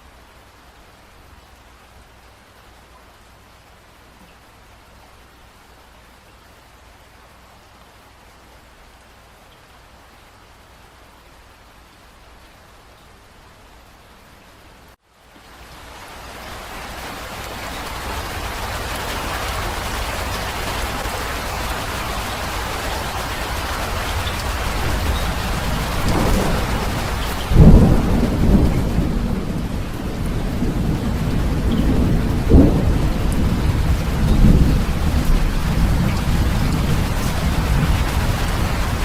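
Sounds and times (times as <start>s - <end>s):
steady rain: 0.0s - 39.0s
thunder rumbling: 23.5s - 39.0s
loud thunderclap: 24.2s - 39.0s.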